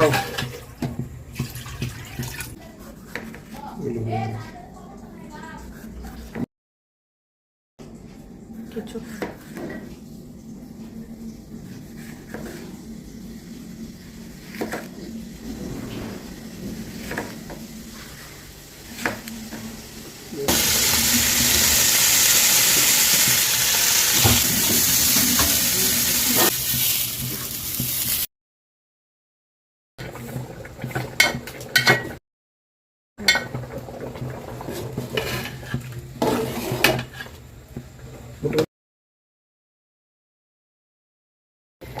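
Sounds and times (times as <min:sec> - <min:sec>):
metal utensils scraping cookware: 0:34.5 - 0:37.4.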